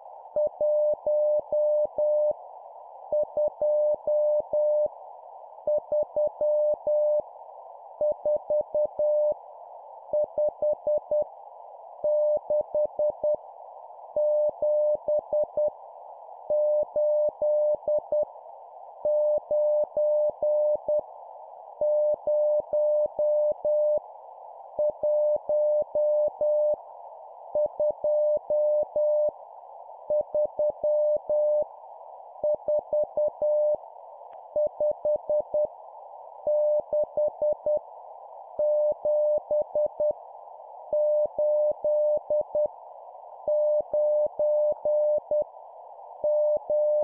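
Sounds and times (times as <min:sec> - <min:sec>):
morse code beeps: 0:43.5 - 0:45.4.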